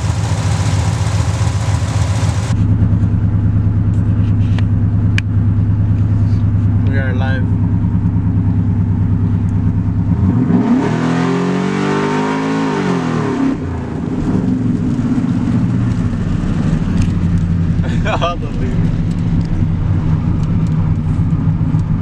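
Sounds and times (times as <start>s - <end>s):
truck engine revving: 0.0s - 2.6s, 10.1s - 14.8s.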